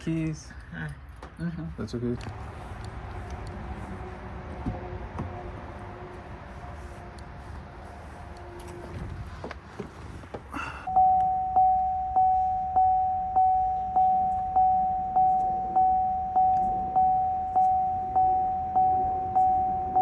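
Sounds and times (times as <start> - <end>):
car warning chime: 10.9 - 20.0.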